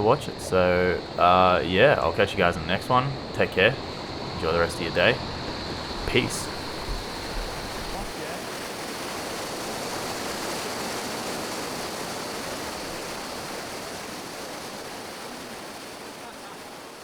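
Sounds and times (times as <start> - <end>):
mountain stream cascades rushing: 5.9 - 17.0.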